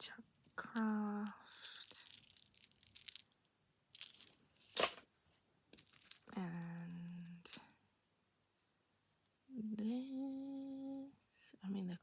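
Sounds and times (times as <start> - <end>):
person speaking: 0.0 - 3.2
jewellery pieces being handled: 0.0 - 5.0, 5.7 - 7.6.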